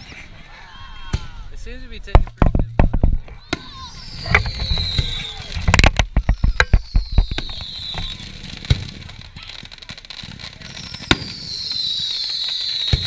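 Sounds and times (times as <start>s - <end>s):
fireworks booms: 2.0s - 13.0s
fireworks crackling pops: 2.0s - 13.0s
high descending whistle: 3.3s - 8.4s, 10.7s - 13.0s.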